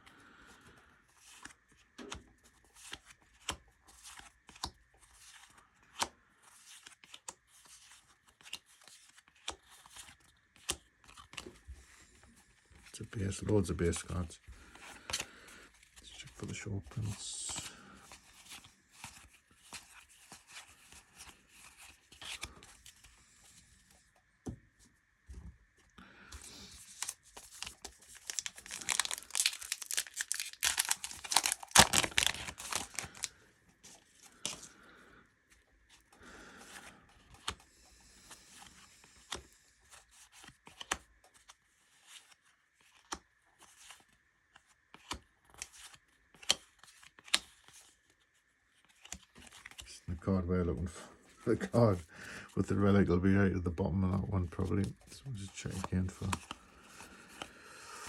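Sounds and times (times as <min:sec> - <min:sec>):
cards being handled: 0:01.1 - 0:34.7, 0:35.5 - 0:58.0
wrapper tearing and crinkling: 0:27.0 - 0:33.3.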